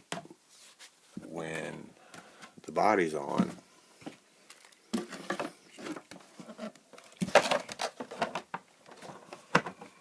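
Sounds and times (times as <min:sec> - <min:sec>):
plastic clatter: 0:04.5 - 0:10.0
plastic clicks and knocks: 0:07.0 - 0:09.9.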